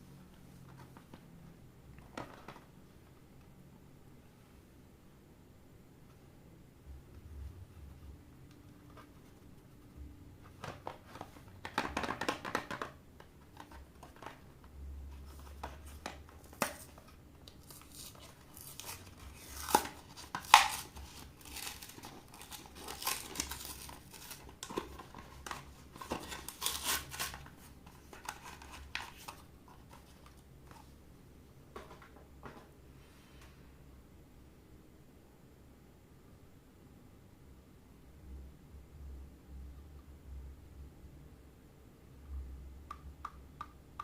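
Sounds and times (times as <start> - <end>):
packaging torn and crinkled: 17.4 - 29.4.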